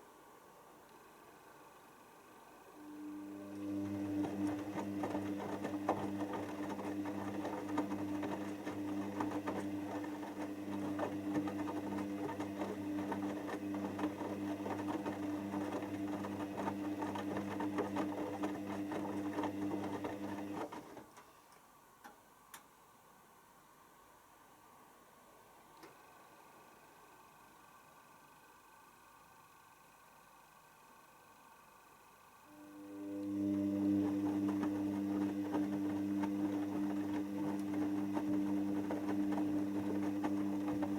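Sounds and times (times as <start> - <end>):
washing machine motor hum: 2.7 - 21.1, 32.5 - 40.9.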